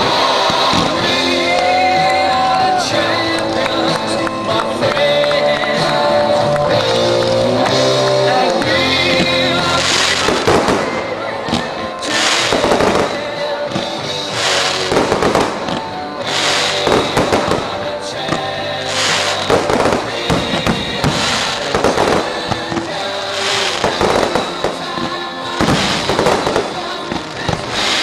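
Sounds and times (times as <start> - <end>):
music: 0.0 - 28.0
firework shells bursting with crackling: 6.8 - 28.0.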